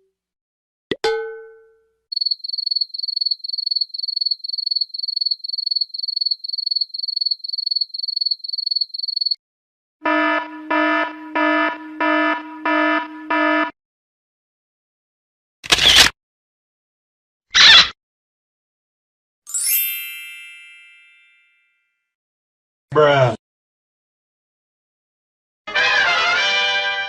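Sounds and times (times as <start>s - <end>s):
harsh buzzer: 10.0s - 13.8s
electronic alarm beeping: 10.1s - 13.7s.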